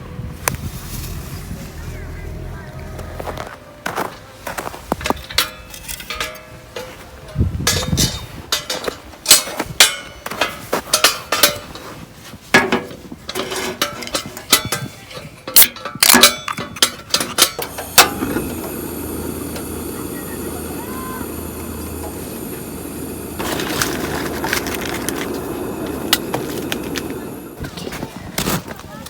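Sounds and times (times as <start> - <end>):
dishes and utensils clattering: 5.0 - 7.0, 7.7 - 18.5
steady hiss: 17.4 - 28.0.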